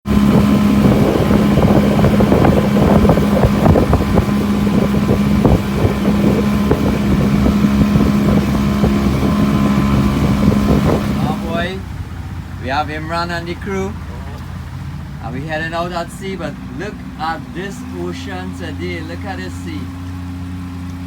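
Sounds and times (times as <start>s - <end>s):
boat engine running: 0.0s - 21.0s
wind buffeting microphone: 0.0s - 21.0s.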